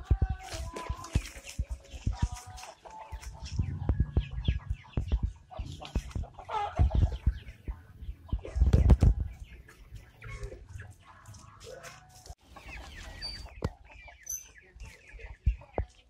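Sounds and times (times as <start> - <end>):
chickens clucking and chirping: 0.0 - 16.0
low thumps: 3.4 - 9.3.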